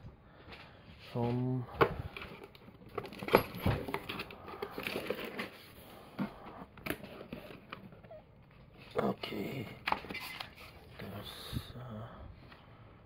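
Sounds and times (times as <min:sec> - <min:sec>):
packaging rustling and crinkling: 0:02.0 - 0:11.2.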